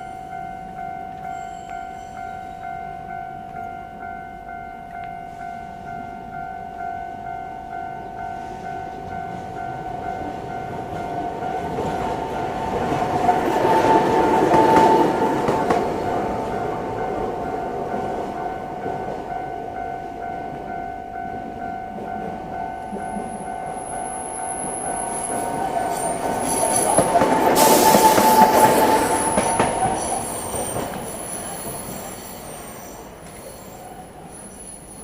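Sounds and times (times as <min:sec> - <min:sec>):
crossing warning bell: 0:00.0 - 0:35.0
tram passing: 0:00.0 - 0:35.0
wheel squeal: 0:27.6 - 0:35.0.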